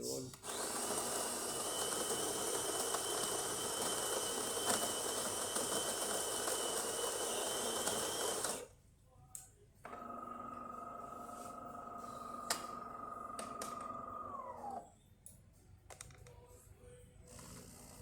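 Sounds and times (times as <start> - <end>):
coffee grinder whirring: 0.4 - 8.7.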